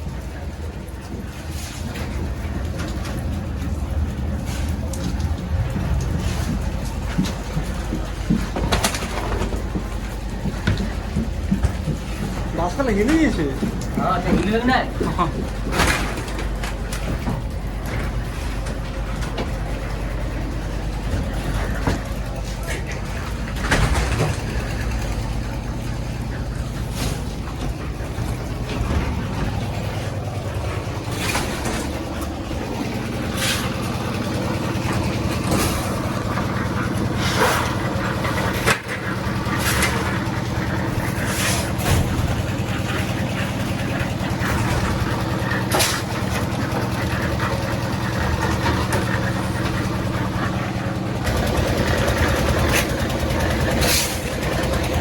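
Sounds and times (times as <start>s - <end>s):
heavy engine running: 0.0s - 55.0s.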